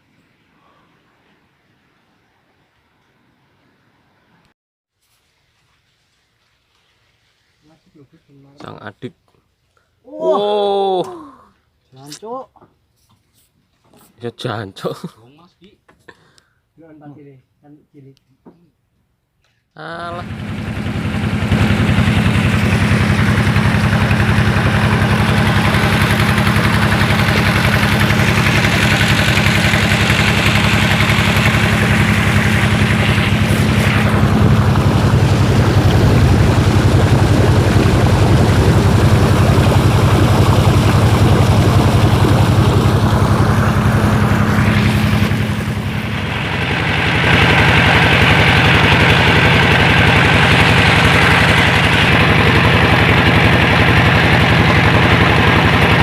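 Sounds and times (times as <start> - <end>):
engine running: 20.1 - 56.0.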